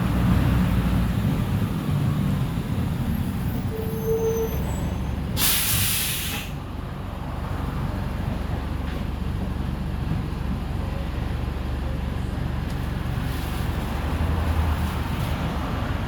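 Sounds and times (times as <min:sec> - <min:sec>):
bus diesel engine running: 0:00.0 - 0:16.0
air brakes hissing: 0:03.8 - 0:06.6.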